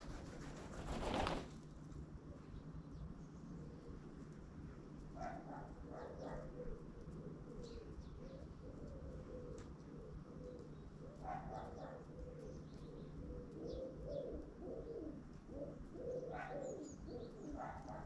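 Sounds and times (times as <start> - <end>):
small birds chirping faintly: 0.1 - 18.0
pigeon cooing: 5.2 - 18.0.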